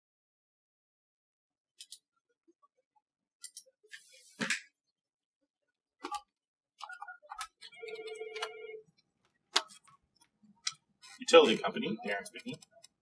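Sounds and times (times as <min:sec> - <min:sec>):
telephone ringing: 0:07.6 - 0:08.9.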